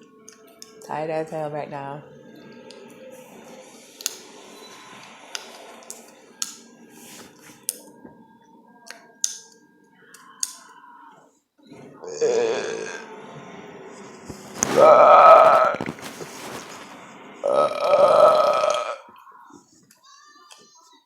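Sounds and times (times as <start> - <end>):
loud burp: 12.0 - 13.1, 14.8 - 15.8, 17.4 - 19.0.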